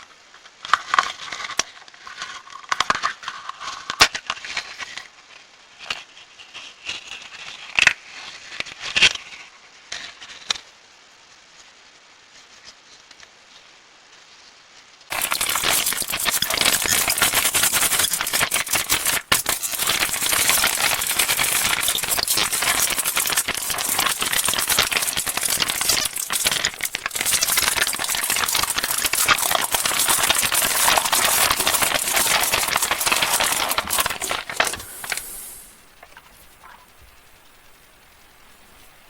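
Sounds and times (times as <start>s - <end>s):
plastic wrappers crinkling: 15.1s - 37.0s.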